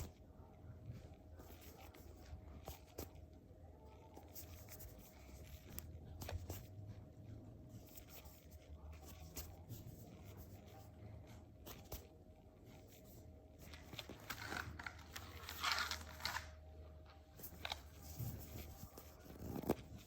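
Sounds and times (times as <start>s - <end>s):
crinkly scratchy stretching: 7.7s - 16.6s, 17.4s - 20.0s
squishy toys handled and squeezed: 11.6s - 16.6s.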